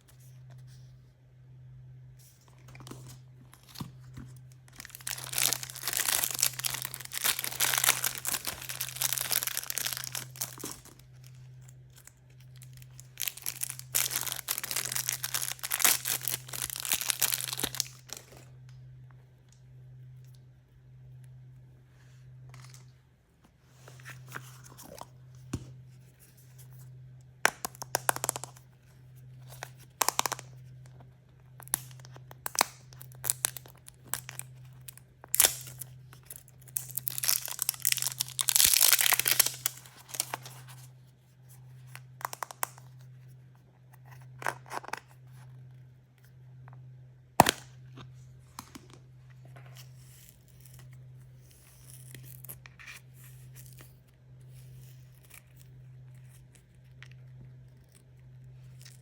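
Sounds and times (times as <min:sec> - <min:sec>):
packaging crinkling and tearing: 0:02.5 - 0:18.5, 0:31.6 - 0:40.9, 0:41.8 - 0:43.0.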